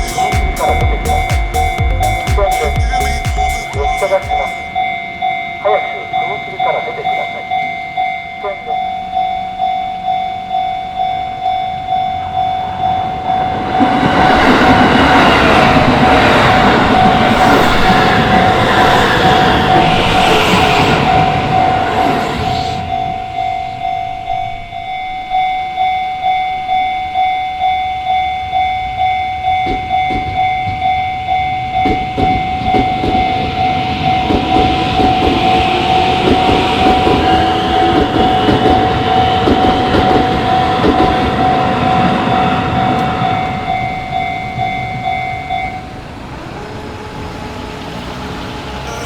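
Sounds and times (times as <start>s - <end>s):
electric train passing: 0.0s - 49.0s
train wheels clattering: 29.5s - 41.6s.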